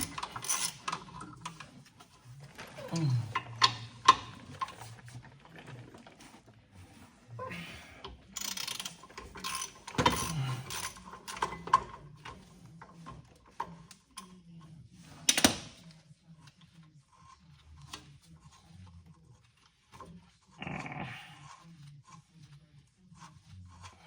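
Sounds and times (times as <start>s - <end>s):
metallic clicks and clanks: 0.0s - 2.1s, 8.0s - 14.3s, 15.2s - 15.8s.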